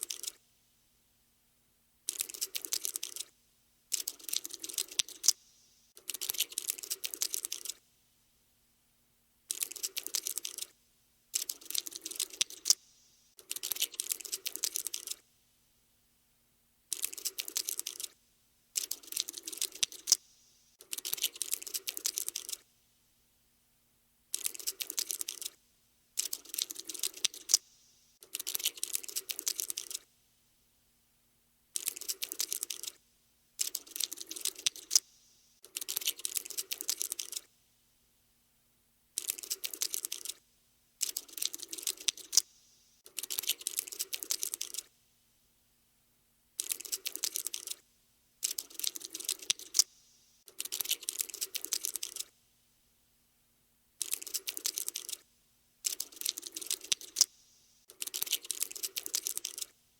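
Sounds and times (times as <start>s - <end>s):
cockroach legs scuttling: 9.5s - 10.7s, 11.4s - 12.8s, 16.9s - 18.1s, 18.8s - 20.2s, 24.3s - 25.6s, 26.2s - 27.6s, 28.2s - 30.0s, 31.8s - 33.0s, 33.6s - 35.0s, 35.6s - 37.5s, 39.2s - 40.4s, 41.0s - 42.5s, 43.1s - 44.9s, 46.6s - 47.8s, 48.4s - 52.3s, 54.0s - 55.2s, 55.8s - 57.3s, 57.9s - 59.7s.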